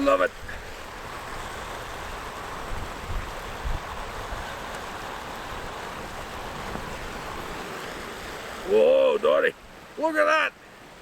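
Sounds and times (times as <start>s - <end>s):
wind buffeting microphone: 0.0s - 8.6s
river water rushing: 0.0s - 11.0s.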